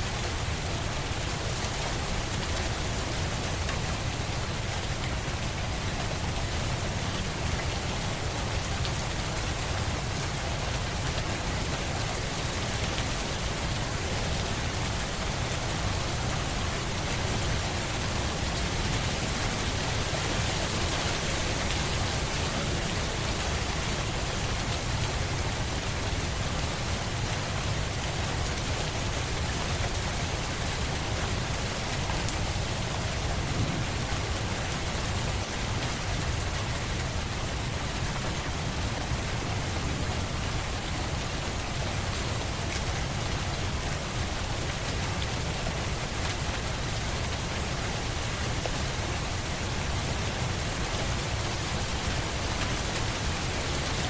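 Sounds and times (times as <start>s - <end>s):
steady rain falling: 0.0s - 54.0s.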